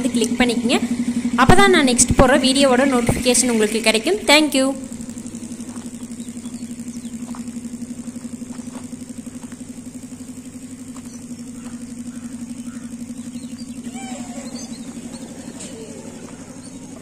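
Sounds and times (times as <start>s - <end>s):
small engine running: 0.0s - 17.0s
short high calls: 11.6s - 17.0s.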